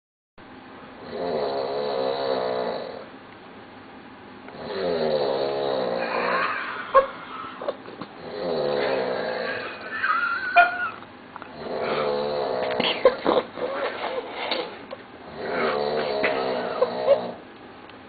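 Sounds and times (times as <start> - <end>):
person snoring loudly: 1.0 - 3.0, 4.5 - 10.1, 11.5 - 13.8, 15.3 - 17.4.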